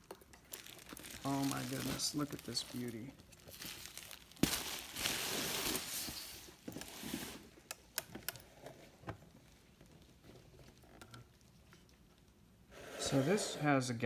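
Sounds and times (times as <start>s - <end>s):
packaging rustling and crinkling: 0.0s - 7.6s.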